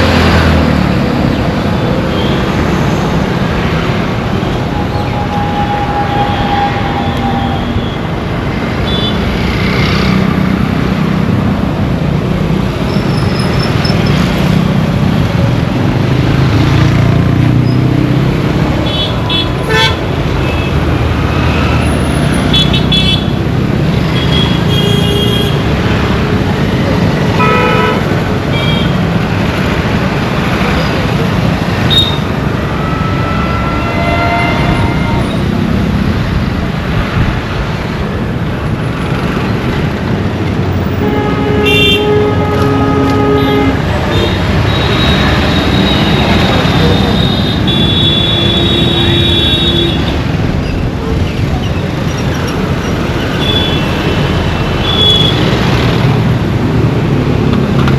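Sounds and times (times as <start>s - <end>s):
heavy road traffic rumble: 0.0s - 57.9s
vehicle horns honking: 18.8s - 20.8s, 24.2s - 25.6s, 27.3s - 29.0s, 31.8s - 35.6s, 40.9s - 50.2s, 53.1s - 55.5s.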